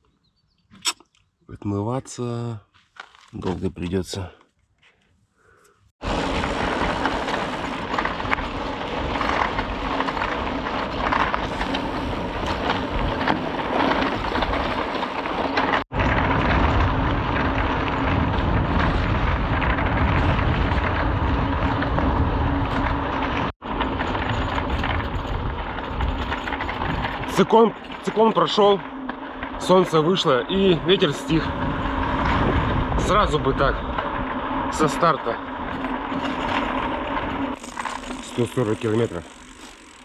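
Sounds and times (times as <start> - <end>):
bike tyre hum: 4.9 - 40.0
wind on microphone: 15.9 - 27.3, 30.6 - 34.7.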